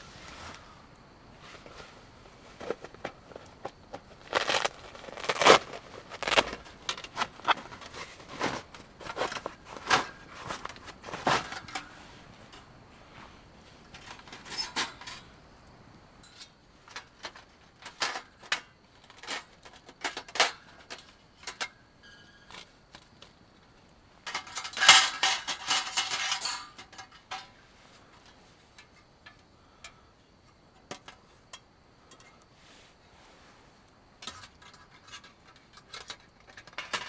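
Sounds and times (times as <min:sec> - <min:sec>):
camp cookware clinking: 0:01.4 - 0:12.7, 0:24.2 - 0:27.6.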